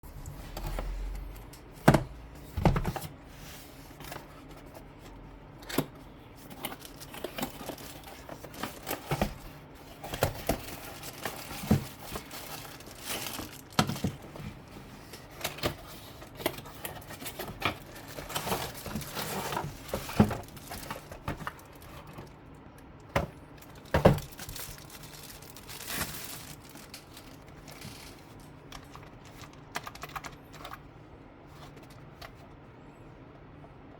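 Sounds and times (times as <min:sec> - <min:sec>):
packaging crinkling and tearing: 0:06.4 - 0:22.5, 0:23.4 - 0:30.7.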